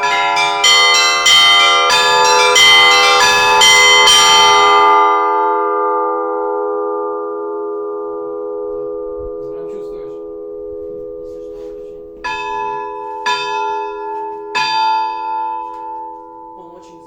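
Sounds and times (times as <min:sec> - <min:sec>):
church bells ringing: 0:00.0 - 0:17.0.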